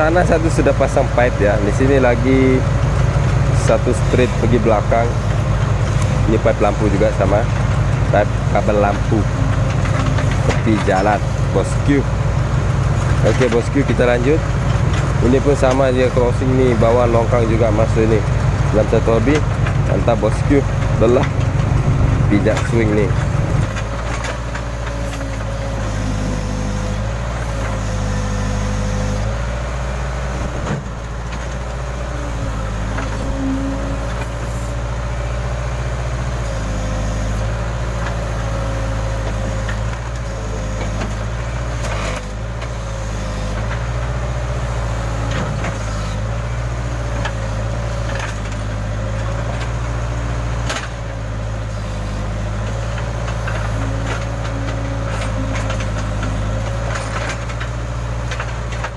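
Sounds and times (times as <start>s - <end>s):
diesel engine running: 0.0s - 58.9s
wavering hydraulic whine: 20.0s - 23.8s, 32.2s - 34.7s.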